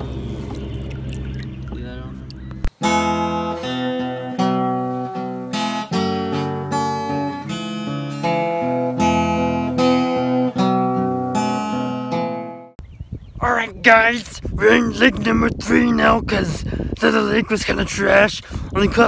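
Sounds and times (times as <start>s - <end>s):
acoustic guitar strumming: 0.0s - 12.7s.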